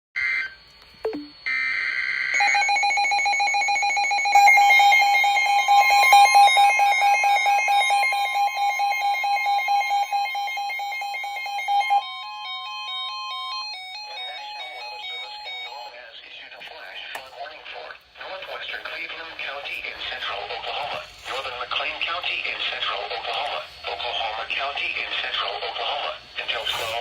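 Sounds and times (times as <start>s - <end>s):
pulsed alarm beep: 0.2s - 16.0s
steady attention tone: 1.0s - 1.5s.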